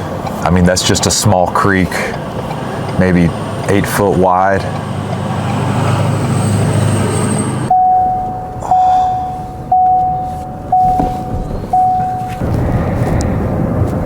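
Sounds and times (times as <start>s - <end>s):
vehicle running: 0.0s - 14.0s
electronic beeper tones: 7.7s - 12.4s.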